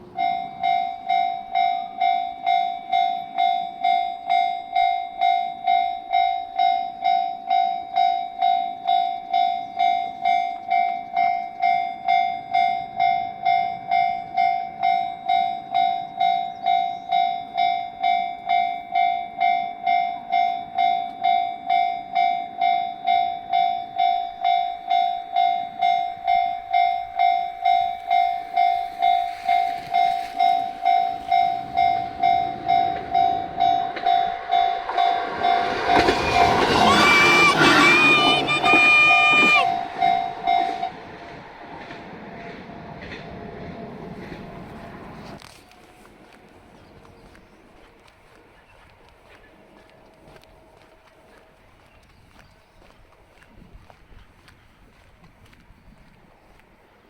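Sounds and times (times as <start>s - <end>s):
level crossing warning bell: 0.0s - 41.6s.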